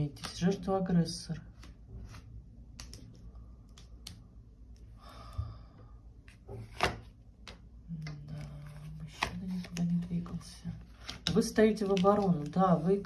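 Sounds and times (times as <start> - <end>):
person speaking: 7.9 - 13.0.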